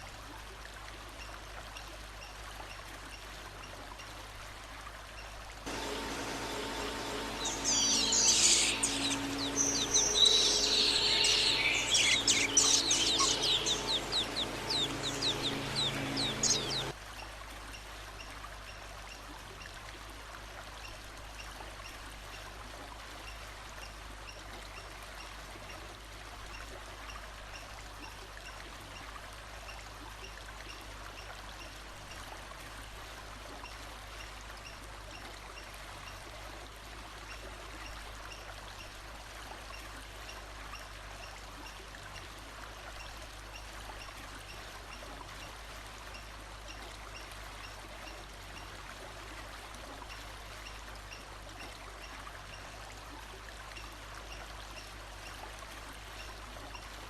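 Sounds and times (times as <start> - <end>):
flowing water rushing: 0.0 - 57.0
songbird singing: 5.7 - 16.9.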